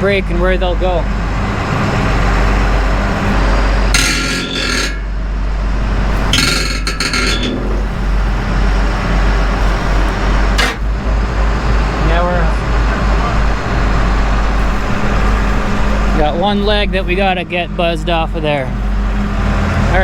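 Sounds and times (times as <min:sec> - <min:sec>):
heavy machinery engine running: 0:00.0 - 0:20.0
steel scraping against steel: 0:02.4 - 0:11.2.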